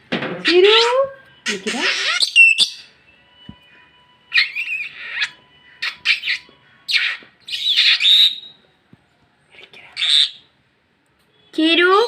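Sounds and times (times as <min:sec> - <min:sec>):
parrots squawking: 0:00.4 - 0:03.0, 0:04.3 - 0:08.6, 0:10.0 - 0:10.5.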